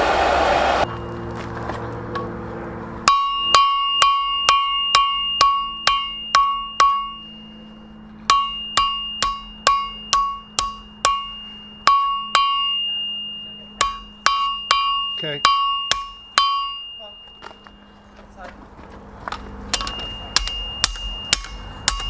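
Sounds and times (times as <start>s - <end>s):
hammer striking steel on anvil: 3.0s - 7.6s, 8.2s - 17.4s, 19.7s - 22.0s.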